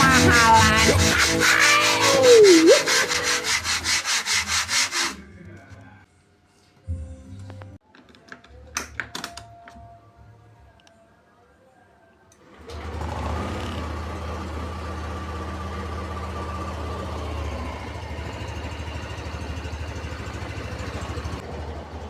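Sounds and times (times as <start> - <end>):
scooter engine starting and idling: 12.4 - 22.0.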